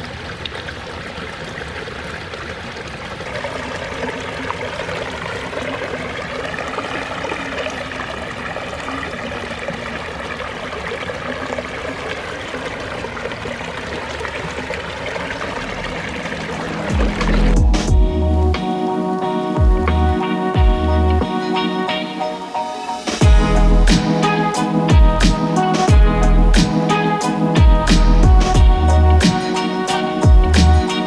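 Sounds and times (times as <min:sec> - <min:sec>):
water splashing over stones: 0:00.0 - 0:20.8.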